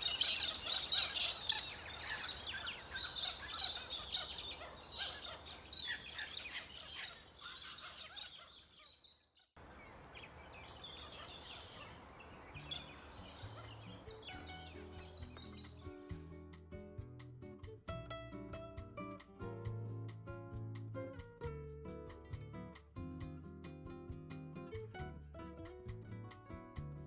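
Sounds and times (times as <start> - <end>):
small birds chirping: 0.0 - 16.2
soft music: 12.4 - 27.0.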